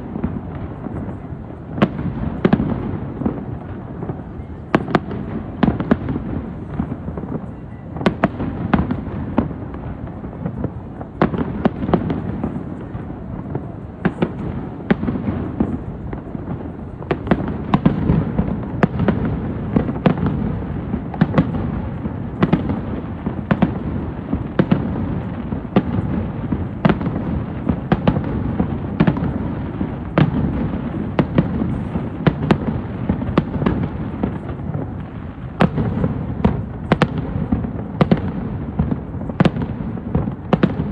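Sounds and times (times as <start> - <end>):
fireworks bursting: 0.0 - 40.9.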